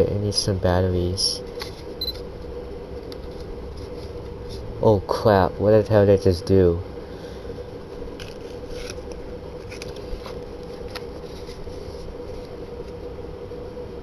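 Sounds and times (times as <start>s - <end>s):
steady room hum: 0.0s - 14.0s
packaging scrapes and clicks: 8.2s - 12.4s.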